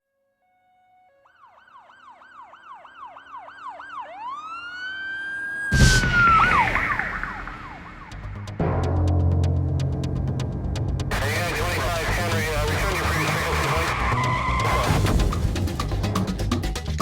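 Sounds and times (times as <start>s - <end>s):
police siren yelp and wail: 0.4s - 8.5s, 11.1s - 15.2s
loud crash with deep rumble: 5.7s - 10.0s.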